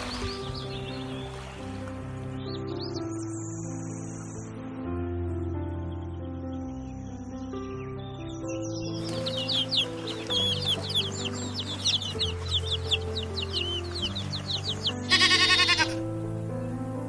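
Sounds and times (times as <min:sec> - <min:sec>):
birds chirping: 0:00.0 - 0:04.6, 0:05.7 - 0:17.0
background music: 0:00.0 - 0:17.0
goat bleating: 0:15.0 - 0:16.0.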